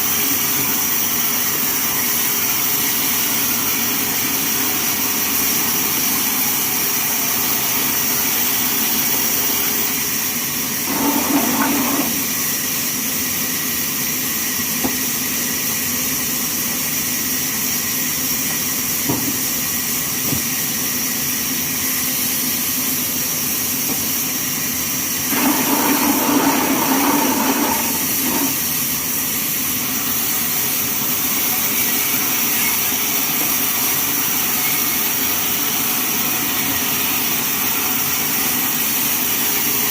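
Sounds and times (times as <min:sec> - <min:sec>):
bandsaw mill whining: 0:10.6 - 0:12.7, 0:24.9 - 0:30.4.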